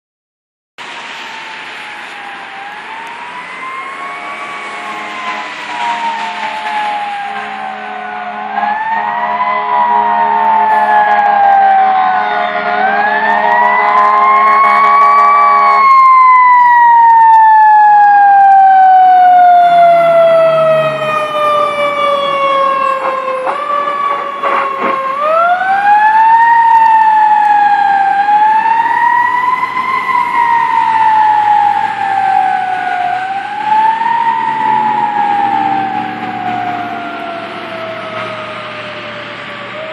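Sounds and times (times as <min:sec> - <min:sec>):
fire truck siren wailing: 0:00.8 - 0:39.9
steady horn blast: 0:03.4 - 0:16.0.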